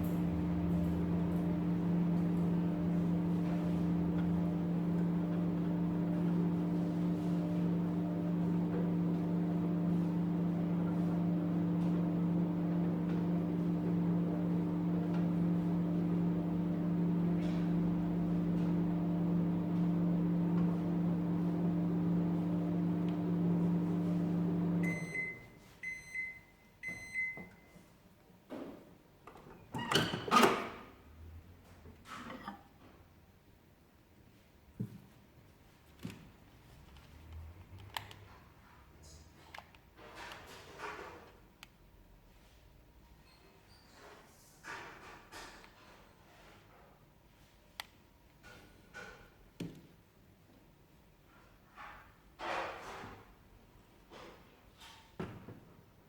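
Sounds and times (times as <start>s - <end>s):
microwave oven humming: 0.0s - 27.5s.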